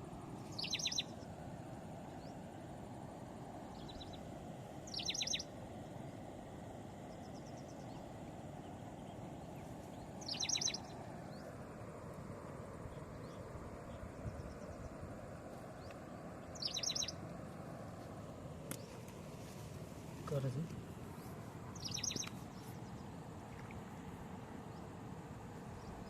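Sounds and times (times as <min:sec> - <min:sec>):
outdoor background noise: 0:00.0 - 0:26.0
bird calling in high notes: 0:16.6 - 0:17.2, 0:21.8 - 0:22.4.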